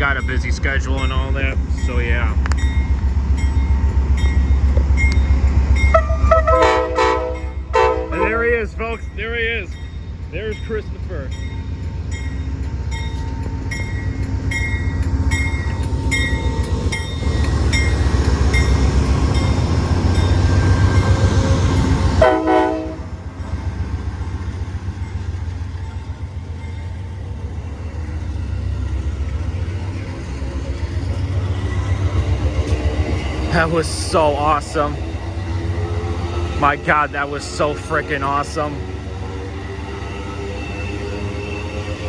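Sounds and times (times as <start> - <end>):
locomotive bell ringing: 0.0 - 35.1
diesel locomotive engine rumble: 0.0 - 42.0
train rolling past: 0.0 - 42.0
train horn blast: 5.9 - 8.5, 21.5 - 23.2.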